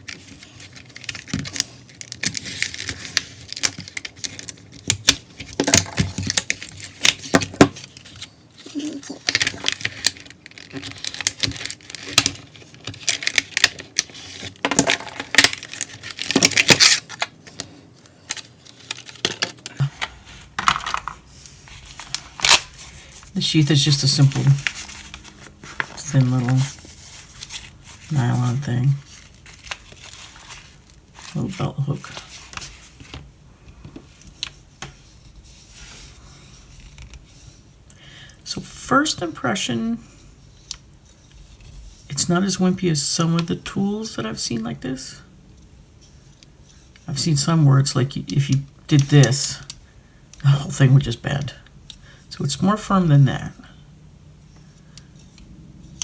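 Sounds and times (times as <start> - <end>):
packaging and metal tool handled: 18.3 - 31.4.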